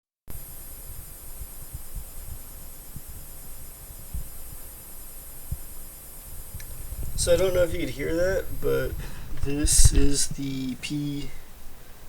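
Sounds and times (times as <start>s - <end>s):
high-pitched monitor whine: 0.3s - 12.0s
low thumps and rumble: 6.5s - 10.4s.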